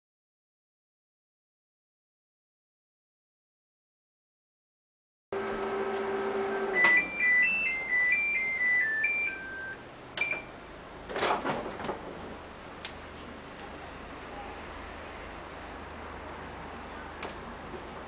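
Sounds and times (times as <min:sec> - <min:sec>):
microwave oven humming: 0:05.4 - 0:11.0
electronic beep tune: 0:06.4 - 0:10.5.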